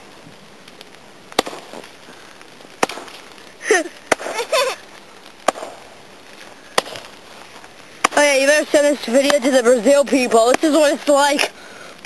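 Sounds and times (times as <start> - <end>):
axe chopping tree trunk: 1.4 - 1.8, 2.8 - 3.2, 4.1 - 4.4, 5.4 - 5.8, 6.7 - 7.1, 8.0 - 8.4.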